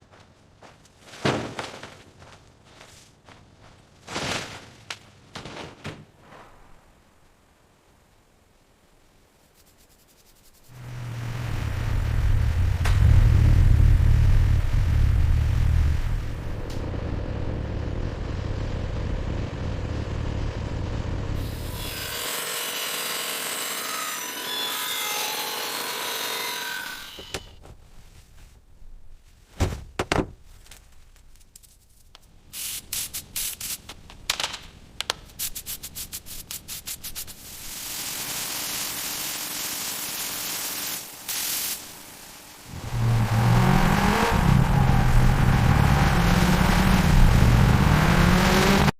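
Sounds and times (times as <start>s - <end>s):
car engine starting and running: 10.8s - 21.5s, 42.7s - 48.9s
steady hiss: 31.3s - 34.1s, 35.2s - 43.3s.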